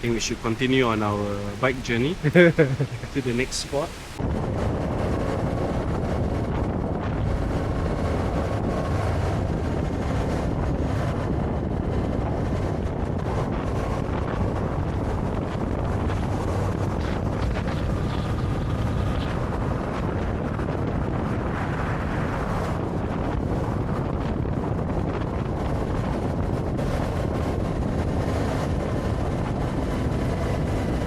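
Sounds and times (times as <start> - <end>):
wind rushing over microphone: 0.0 - 31.0
motorcycle engine drone: 4.2 - 31.0.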